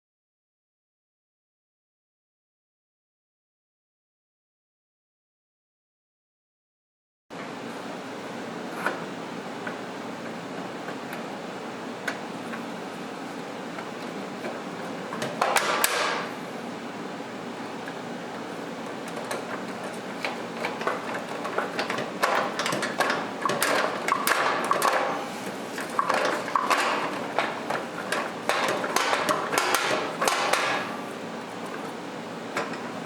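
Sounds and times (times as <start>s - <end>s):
knocks taps and clatter: 19.1s - 25.2s, 25.8s - 31.0s.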